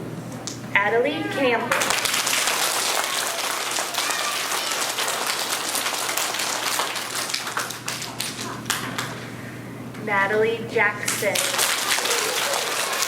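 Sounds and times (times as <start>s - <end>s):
children applauding: 1.7s - 9.2s, 11.3s - 13.0s.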